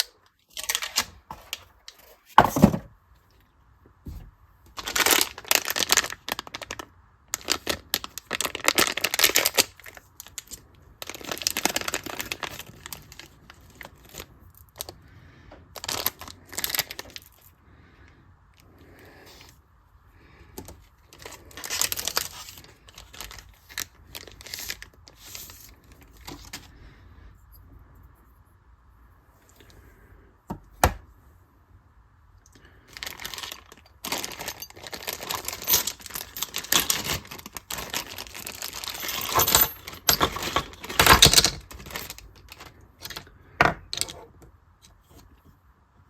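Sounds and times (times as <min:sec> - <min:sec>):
packaging crinkling and tearing: 0:00.5 - 0:02.0, 0:04.8 - 0:14.9, 0:15.8 - 0:17.4, 0:21.1 - 0:26.6, 0:32.9 - 0:43.3.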